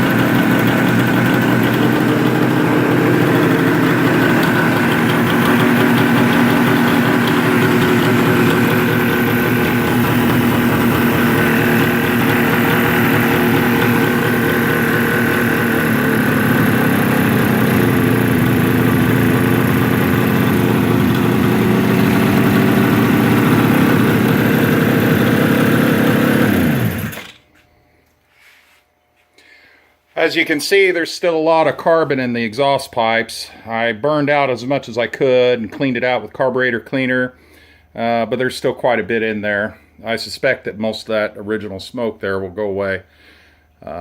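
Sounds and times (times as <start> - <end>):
motorcycle engine idling: 0.0 - 27.2.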